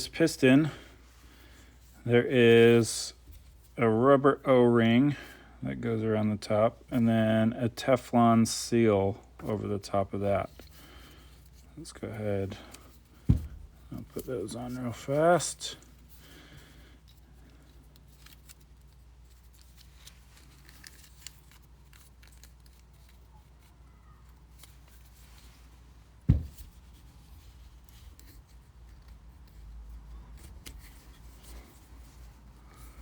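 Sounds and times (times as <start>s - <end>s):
low thump: 13.3s - 13.7s, 26.3s - 26.7s.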